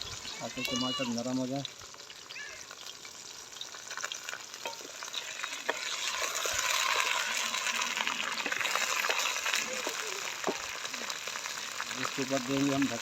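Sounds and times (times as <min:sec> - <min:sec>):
vegetables sizzling in hot oil: 0:00.0 - 0:13.0.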